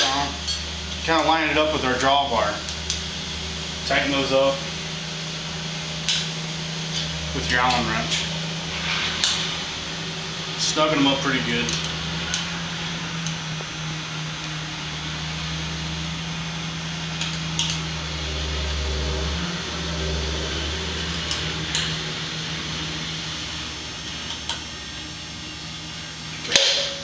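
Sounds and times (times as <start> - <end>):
low machine hum: 0.0 - 27.0.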